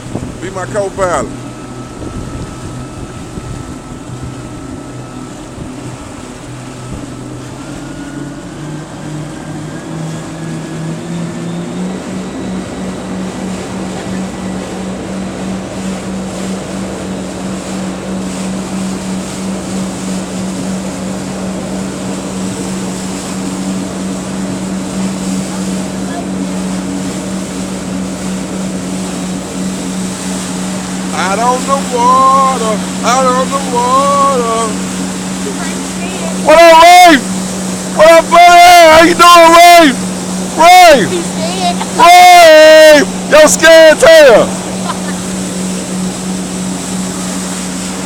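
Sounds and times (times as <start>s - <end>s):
jet ski engine running: 0.0s - 48.0s
rush of noise: 34.2s - 48.0s.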